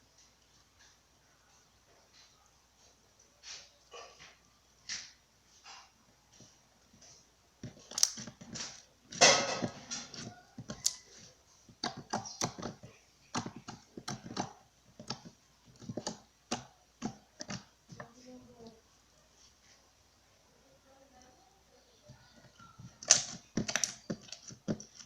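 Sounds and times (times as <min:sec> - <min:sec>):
slime squishing and popping: 0:07.6 - 0:11.2, 0:23.0 - 0:25.0.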